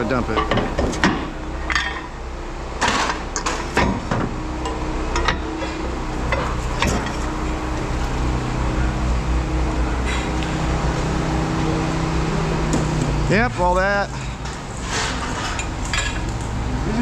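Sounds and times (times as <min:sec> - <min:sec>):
low machine hum: 0:00.0 - 0:17.0
scrap metal clanking: 0:02.8 - 0:08.2, 0:14.1 - 0:16.4.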